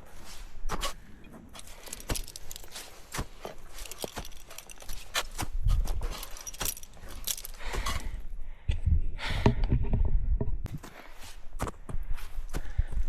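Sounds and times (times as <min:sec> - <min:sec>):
footsteps: 0:00.0 - 0:08.2
metal climbing gear clinking: 0:00.8 - 0:08.3.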